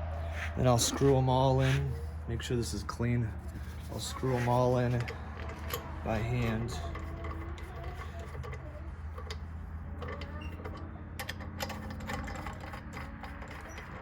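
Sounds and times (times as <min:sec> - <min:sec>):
metallic clicks of nuts threaded: 0:04.5 - 0:14.0.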